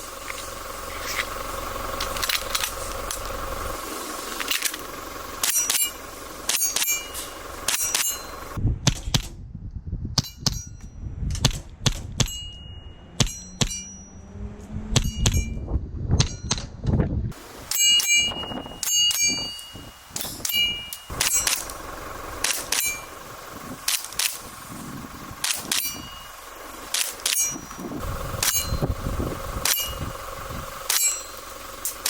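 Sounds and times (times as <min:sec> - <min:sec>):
steady hum: 0:00.0 - 0:08.8, 0:17.3 - 0:32.0
metallic ring: 0:05.4 - 0:08.6, 0:10.2 - 0:11.0, 0:12.2 - 0:16.7, 0:17.7 - 0:21.7, 0:22.6 - 0:23.2, 0:25.7 - 0:26.4, 0:27.2 - 0:27.8, 0:28.4 - 0:28.9, 0:29.6 - 0:30.2, 0:30.8 - 0:32.0.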